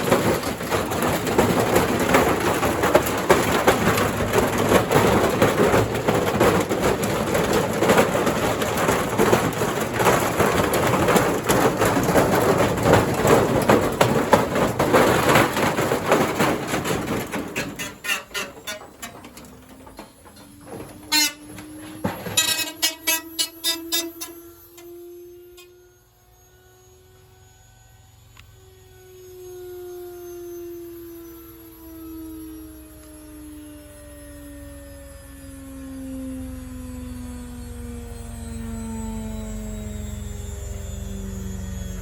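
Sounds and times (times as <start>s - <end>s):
bricks banging in spinning drum: 0.0s - 24.4s.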